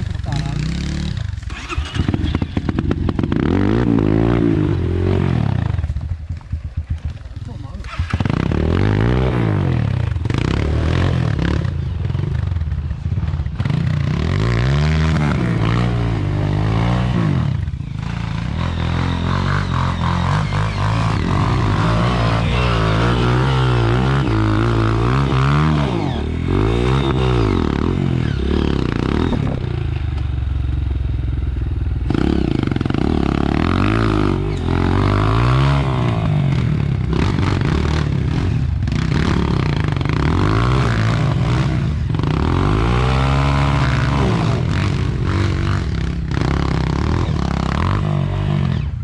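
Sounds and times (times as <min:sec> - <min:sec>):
off-road vehicle engine revving: 0:00.0 - 0:05.9, 0:07.4 - 0:30.1, 0:32.0 - 0:49.0.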